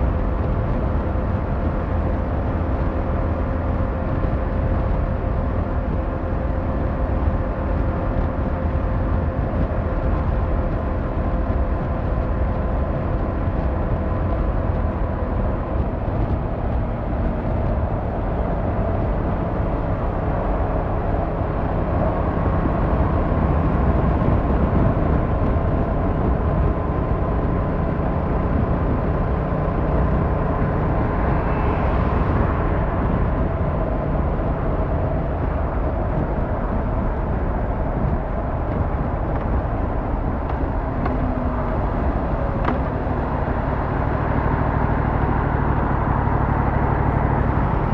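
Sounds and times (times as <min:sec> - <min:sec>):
motorcycle engine and exhaust running: 0:00.0 - 0:47.9.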